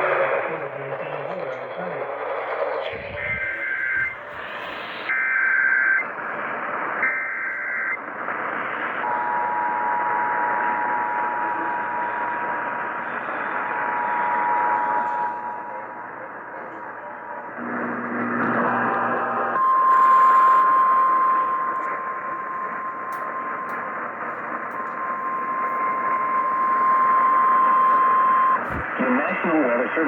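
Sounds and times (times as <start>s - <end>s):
radio static: 0.0s - 30.0s
two-tone data bursts: 2.9s - 6.0s, 19.6s - 28.8s
two-tone attention signal: 13.1s - 16.0s, 19.6s - 28.8s.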